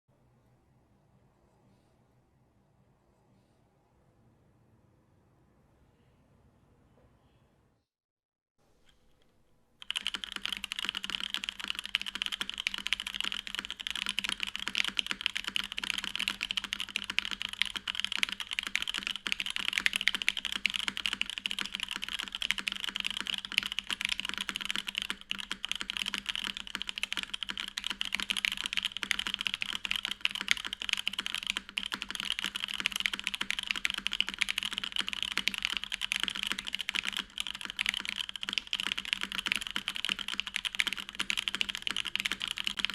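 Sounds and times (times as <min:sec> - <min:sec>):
mechanical keyboard key clacks: 0:09.8 - 0:42.9.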